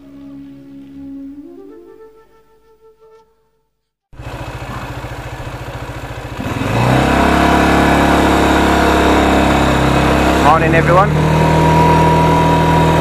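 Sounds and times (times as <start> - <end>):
vehicle engine revving: 4.2 - 13.0.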